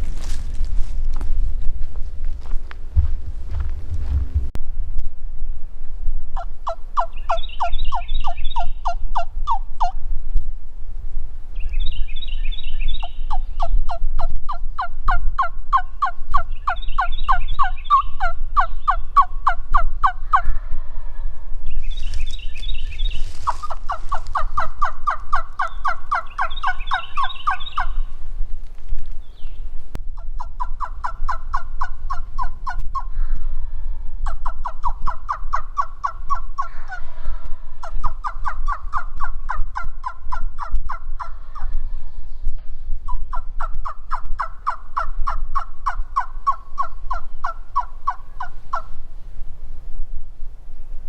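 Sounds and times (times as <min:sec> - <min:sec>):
turkey calling: 0:06.4 - 0:10.0, 0:12.9 - 0:20.6, 0:22.0 - 0:28.2, 0:30.2 - 0:33.4, 0:34.2 - 0:41.8, 0:43.1 - 0:49.0.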